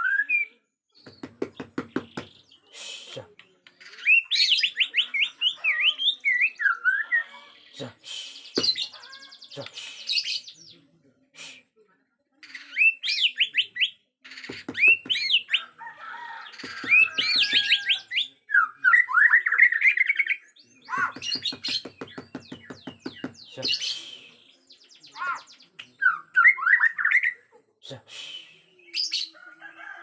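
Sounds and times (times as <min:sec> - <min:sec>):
bird whistling song: 0:00.0 - 0:00.6, 0:03.8 - 0:07.3, 0:12.6 - 0:15.6, 0:16.6 - 0:27.4.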